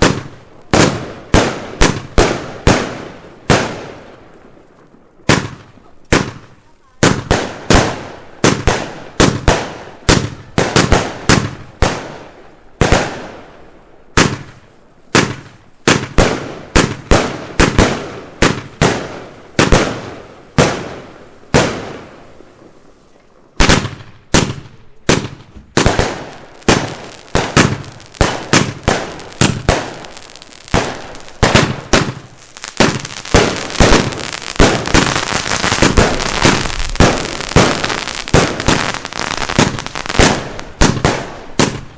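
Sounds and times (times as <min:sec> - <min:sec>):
firework bangs and crackle: 0:00.0 - 0:41.9.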